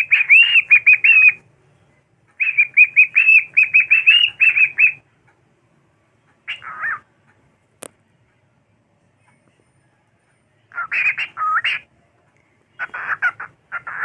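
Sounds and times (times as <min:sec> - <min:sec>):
cockatiel chirping: 0:00.0 - 0:01.4, 0:02.4 - 0:05.0, 0:06.5 - 0:07.0, 0:10.7 - 0:11.9, 0:12.8 - 0:14.0.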